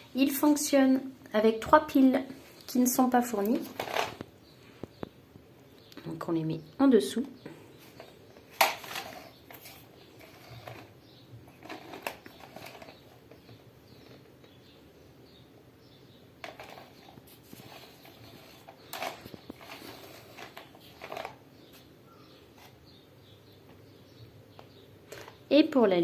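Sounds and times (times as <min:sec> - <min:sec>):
handling rustle: 0:16.4 - 0:21.9.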